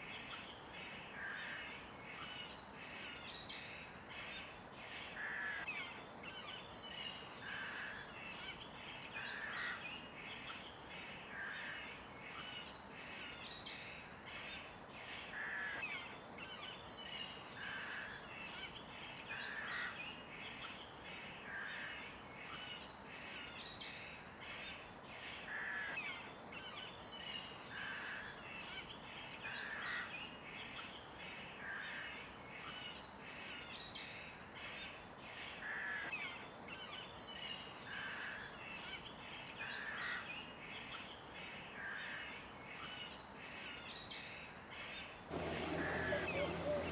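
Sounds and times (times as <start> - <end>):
songbirds chirping and trilling: 43.9 - 46.9
faint steady hiss: 45.3 - 46.9
low bird call: 45.3 - 46.9.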